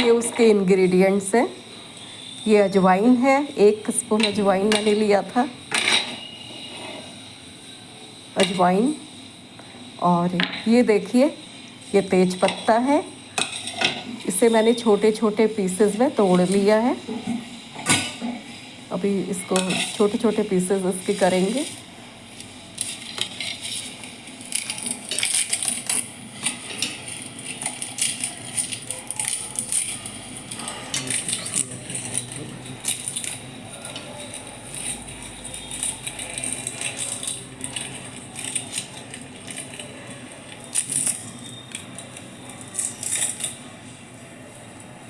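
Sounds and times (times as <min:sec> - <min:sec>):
dry leaves crackling and snapping: 0:22.4 - 0:43.7.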